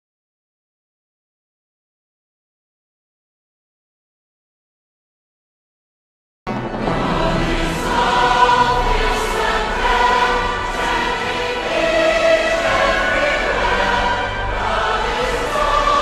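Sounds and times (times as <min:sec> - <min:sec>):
choir singing a hymn: 0:06.5 - 0:16.0.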